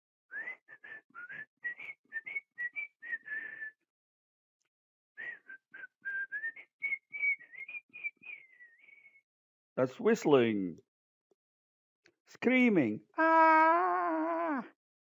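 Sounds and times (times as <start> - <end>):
person whistling a tune: 0.3 - 3.8, 5.2 - 9.2.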